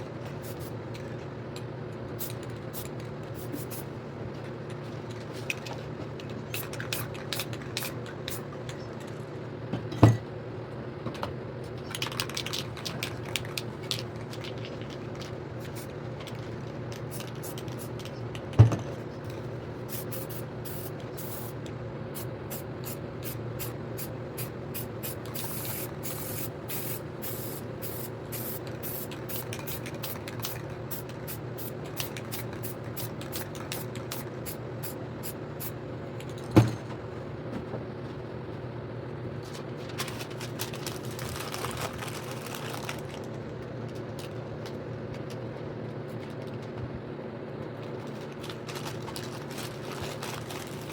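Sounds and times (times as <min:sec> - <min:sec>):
steady low hum: 0:00.0 - 0:50.9
spray paint can hissing: 0:02.2 - 0:03.9, 0:19.9 - 0:21.6, 0:22.2 - 0:35.7.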